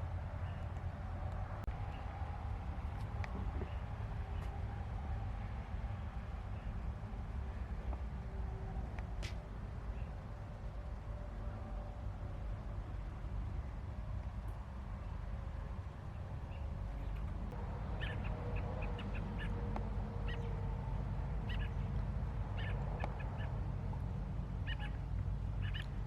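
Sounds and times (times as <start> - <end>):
birds squawking: 17.9 - 20.6, 21.4 - 21.9, 22.5 - 23.6, 24.6 - 26.0.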